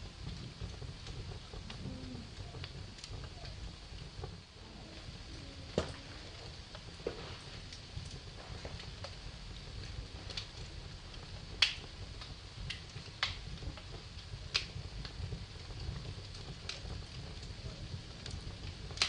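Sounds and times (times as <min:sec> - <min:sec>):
fire crackles and pops: 0:00.0 - 0:19.0
wood fire burning: 0:00.0 - 0:19.0.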